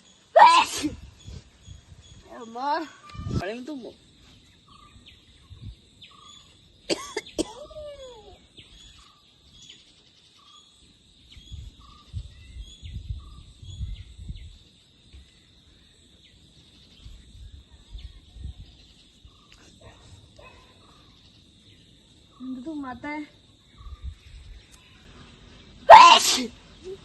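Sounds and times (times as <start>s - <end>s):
faint chirping: 1.2s - 27.0s
falling voiced cry: 25.9s - 26.5s.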